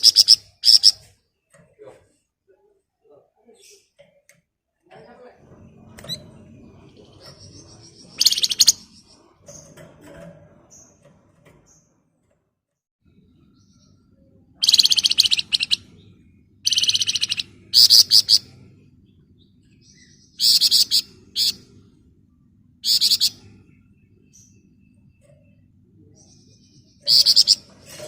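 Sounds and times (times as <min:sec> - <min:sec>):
songbird rattling trills: 0:07.0 - 0:09.8, 0:14.6 - 0:15.8, 0:16.6 - 0:18.4.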